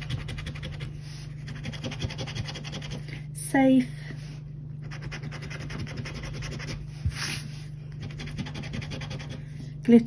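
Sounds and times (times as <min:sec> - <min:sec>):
scratchcard being scratched: 0:04.8 - 0:06.8, 0:08.0 - 0:09.4.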